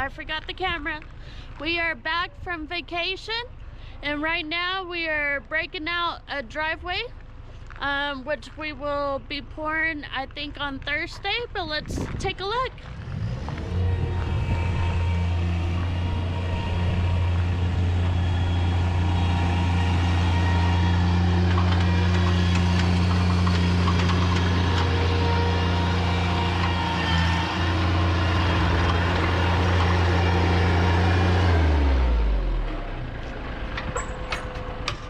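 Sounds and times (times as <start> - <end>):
heavy machine engine running: 11.8 - 35.0.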